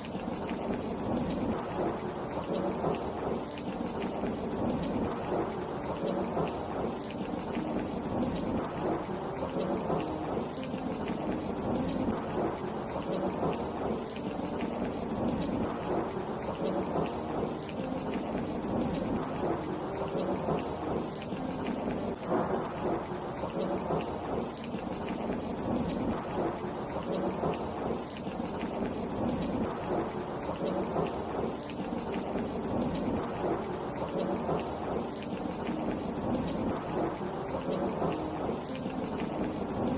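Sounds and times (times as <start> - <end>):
steady rain: 0.0 - 39.9
rolling thunder: 0.3 - 39.9.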